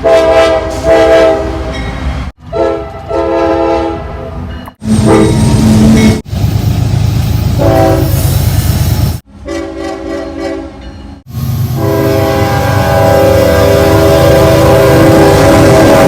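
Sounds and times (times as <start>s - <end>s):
locomotive horn chords: 0.0s - 1.8s, 2.4s - 5.8s, 7.6s - 8.2s, 9.4s - 10.8s, 11.7s - 16.0s
heavy rumble of passing trains: 0.0s - 16.0s.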